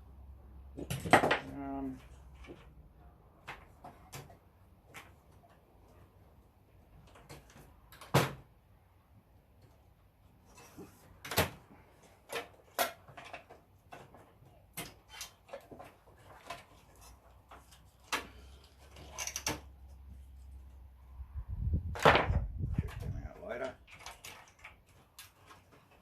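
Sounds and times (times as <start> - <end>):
computer parts and tools clacking: 10.5 - 20.0, 22.7 - 26.0
wind rumble on microphone: 21.1 - 23.4.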